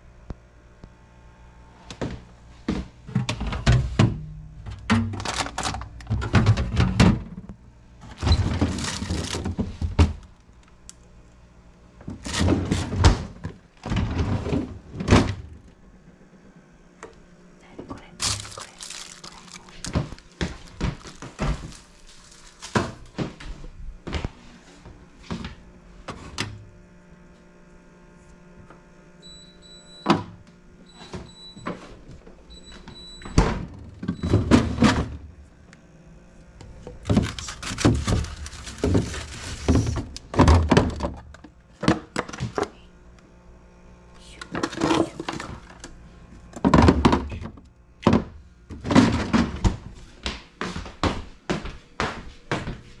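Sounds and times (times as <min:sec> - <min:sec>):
containers knocking and thunking: 0:03.1 - 0:07.5, 0:08.1 - 0:10.4, 0:18.2 - 0:23.3, 0:36.6 - 0:42.7, 0:46.5 - 0:49.8
rustling: 0:18.2 - 0:23.1, 0:37.0 - 0:40.1.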